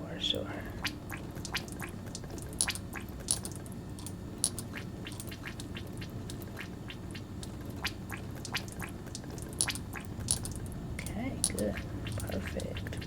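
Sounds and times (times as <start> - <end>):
steady low hum: 0.0 - 13.0
glass dropper clicks and ticks: 2.2 - 5.7, 8.4 - 12.6.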